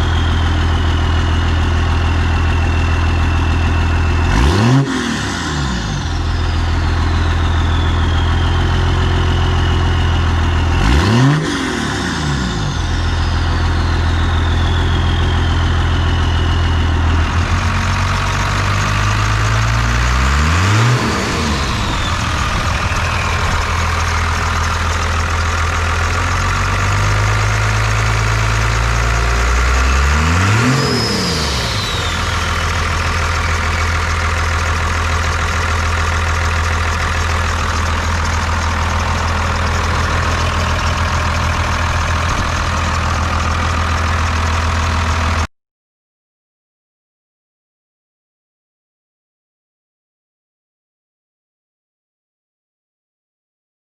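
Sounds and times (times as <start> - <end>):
turbo whistle spooling down: 0.0 - 18.0, 20.1 - 44.3
diesel engine idling and revving: 0.0 - 45.5.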